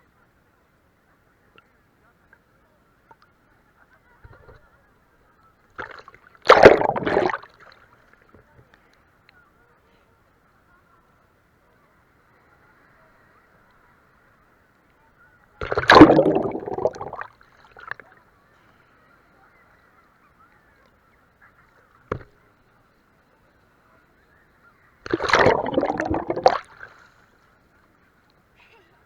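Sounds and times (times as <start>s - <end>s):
water sloshing and splashing: 5.8s - 7.7s, 15.6s - 17.9s, 25.1s - 27.1s.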